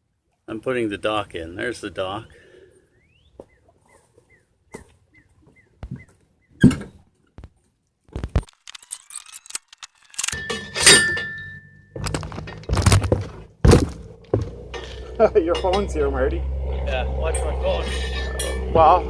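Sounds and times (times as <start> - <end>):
knocks and thuds: 5.8 - 7.5, 12.0 - 14.9, 18.7 - 19.0
ringing metal clang: 10.2 - 12.6, 14.7 - 16.2, 17.2 - 19.0.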